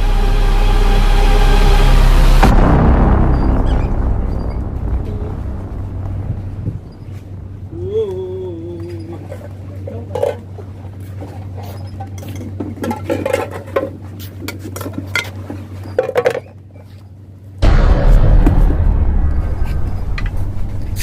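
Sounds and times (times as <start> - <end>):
low hum: 0.0 - 9.8, 17.6 - 21.0.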